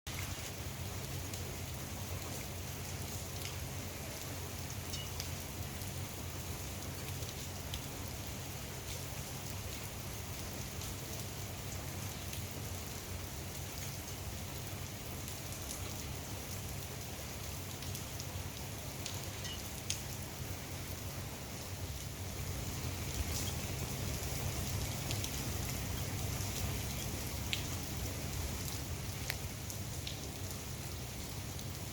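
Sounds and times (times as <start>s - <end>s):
rain falling on pool water: 0.1s - 31.9s.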